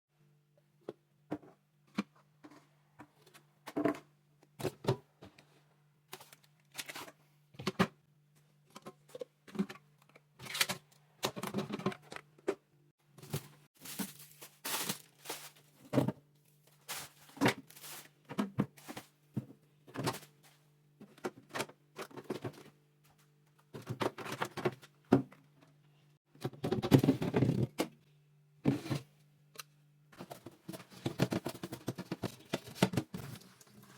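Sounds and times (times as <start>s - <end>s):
rustling and scraping: 13.2s - 21.3s.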